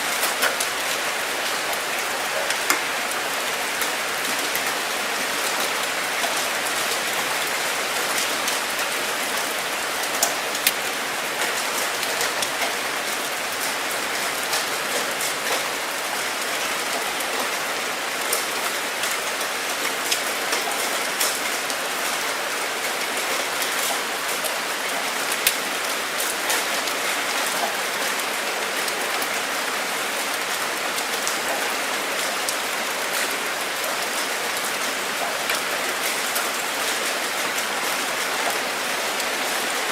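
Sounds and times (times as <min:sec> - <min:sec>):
steady rain falling: 0:00.0 - 0:39.9
raindrops ticking: 0:00.1 - 0:04.8, 0:08.1 - 0:15.7.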